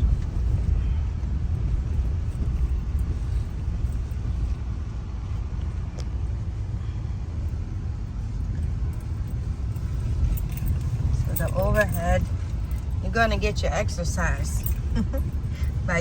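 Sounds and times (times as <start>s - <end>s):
car road and engine rumble: 0.0s - 16.0s.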